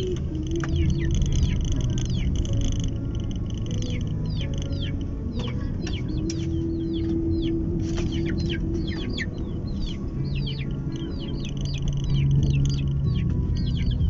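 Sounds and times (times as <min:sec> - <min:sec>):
car engine humming: 0:00.0 - 0:14.0
rapid high bird chirps: 0:05.8 - 0:14.0.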